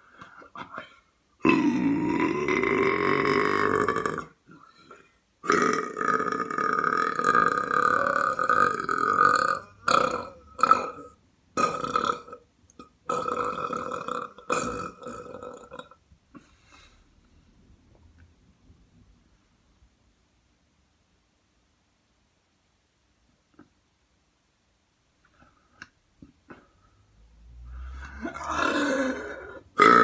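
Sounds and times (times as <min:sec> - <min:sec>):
person belching: 0:01.4 - 0:04.6, 0:05.4 - 0:16.0, 0:28.0 - 0:30.0.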